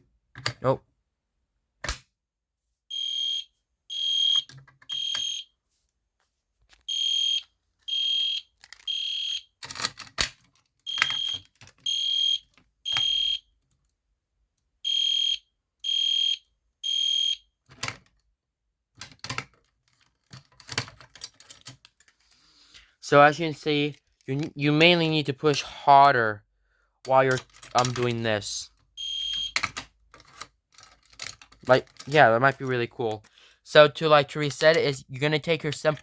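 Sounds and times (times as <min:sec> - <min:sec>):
fire alarm horn blasts: 0:02.9 - 0:05.5, 0:06.9 - 0:09.4, 0:10.9 - 0:13.4, 0:14.9 - 0:17.4, 0:29.0 - 0:29.6.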